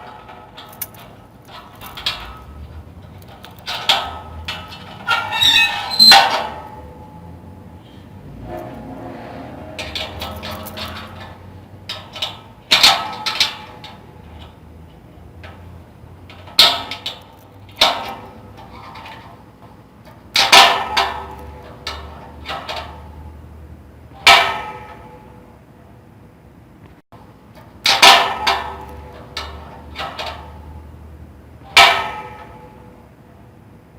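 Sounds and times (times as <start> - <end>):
metal padlock clicking and clanking: 0.0 - 7.1, 9.7 - 23.3.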